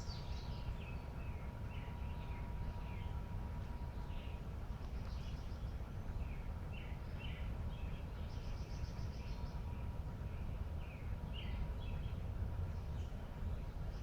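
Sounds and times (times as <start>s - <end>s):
songbirds chirping: 0.0s - 14.0s.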